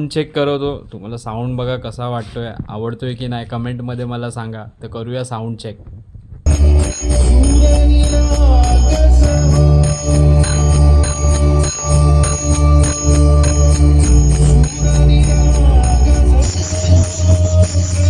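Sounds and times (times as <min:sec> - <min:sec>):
loud dance music: 0:06.5 - 0:18.0.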